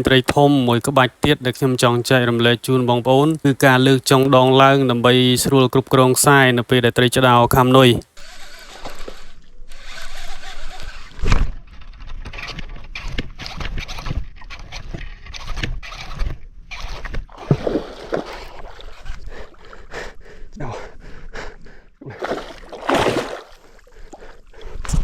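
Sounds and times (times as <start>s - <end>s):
boat knocks and scrapes: 8.2s - 19.3s
water sounds: 13.4s - 25.0s.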